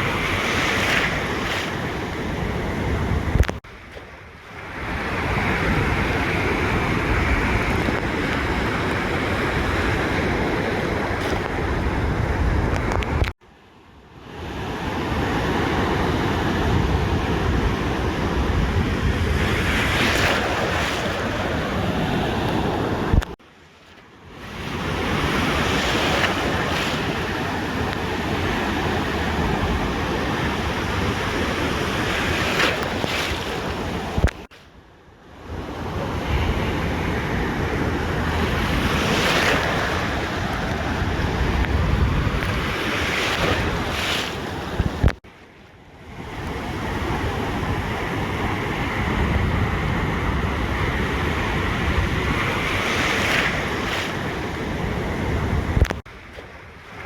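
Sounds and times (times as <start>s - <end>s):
wind buffeting microphone: 0.0s - 13.3s, 15.5s - 23.4s, 35.5s - 45.2s, 46.0s - 56.8s
ocean surf washing onto beach: 0.0s - 13.4s, 14.2s - 23.4s, 24.2s - 34.7s, 35.4s - 57.0s.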